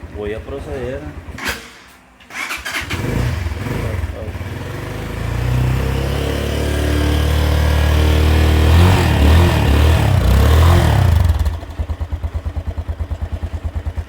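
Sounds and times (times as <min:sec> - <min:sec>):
motorcycle engine revving: 0:00.0 - 0:14.0
motorcycle engine idling: 0:02.2 - 0:08.6, 0:09.3 - 0:14.0.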